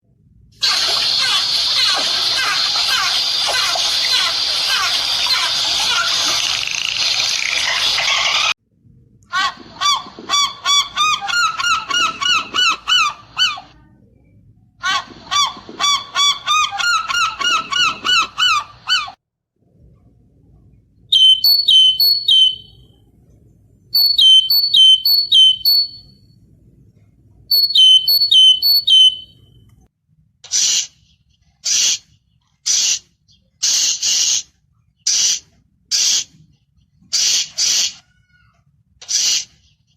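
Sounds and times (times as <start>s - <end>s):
animal chirping: 21.1s - 22.9s, 24.0s - 26.2s, 27.5s - 29.5s
short hissing bursts: 30.5s - 31.0s, 31.6s - 36.4s, 37.1s - 38.0s, 39.0s - 39.6s.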